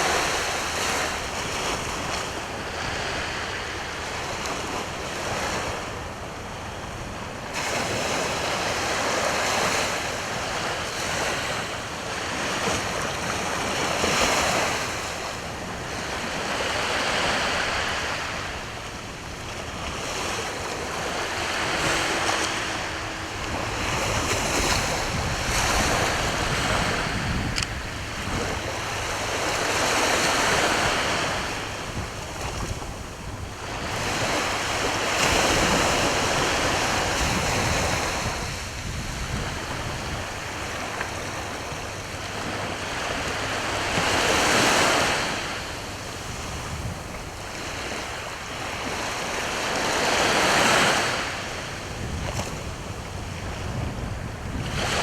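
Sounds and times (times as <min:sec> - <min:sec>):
sea waves breaking on shore: 0:00.0 - 0:55.0.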